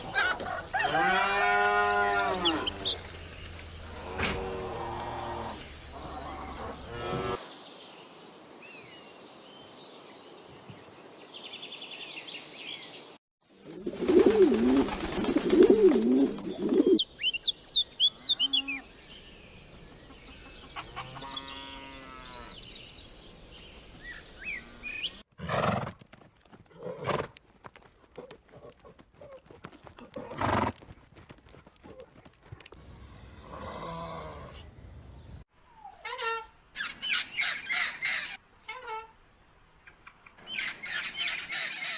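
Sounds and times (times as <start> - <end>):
bird chirps: 0.0 - 4.6, 16.2 - 25.2, 35.7 - 41.9.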